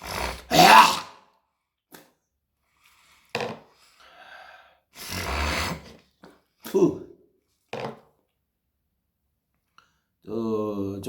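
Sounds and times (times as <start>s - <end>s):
short breath: 3.8s - 6.0s.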